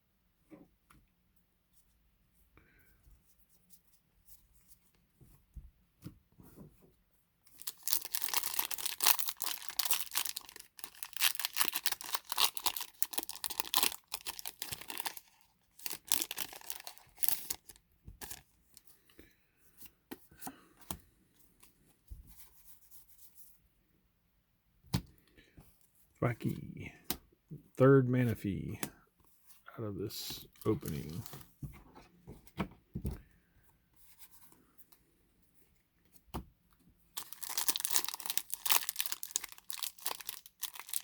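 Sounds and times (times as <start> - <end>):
foil wrapper tearing and crinkling: 7.6 - 18.4, 37.2 - 41.0.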